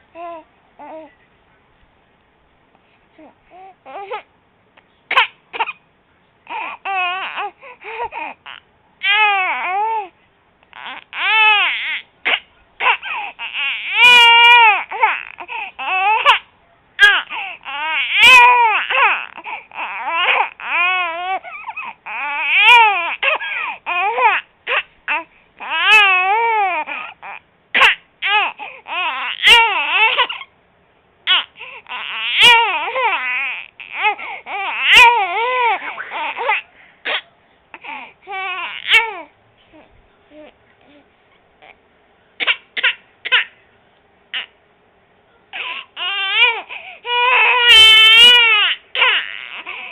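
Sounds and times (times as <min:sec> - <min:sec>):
baby crying: 0:03.2 - 0:04.3, 0:06.5 - 0:10.1, 0:10.7 - 0:30.5, 0:31.3 - 0:41.0, 0:45.5 - 0:49.9
raspy breath: 0:07.4 - 0:08.4, 0:15.4 - 0:15.8, 0:17.3 - 0:17.7, 0:28.6 - 0:28.9, 0:31.5 - 0:31.9, 0:34.0 - 0:34.6, 0:35.8 - 0:37.1, 0:46.5 - 0:47.1.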